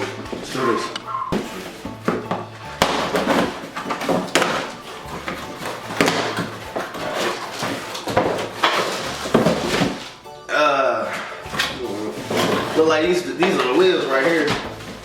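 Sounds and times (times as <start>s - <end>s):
knocks and thuds: 0.0s - 10.1s
packaging rustling: 0.0s - 10.2s, 11.1s - 15.0s.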